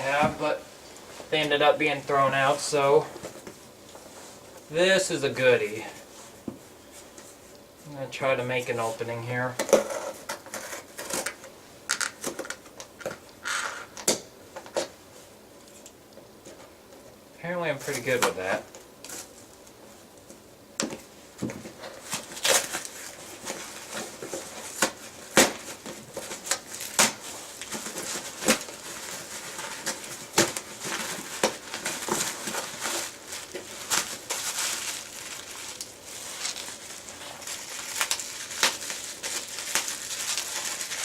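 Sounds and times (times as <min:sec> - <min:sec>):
packaging rustling: 0:21.6 - 0:41.0.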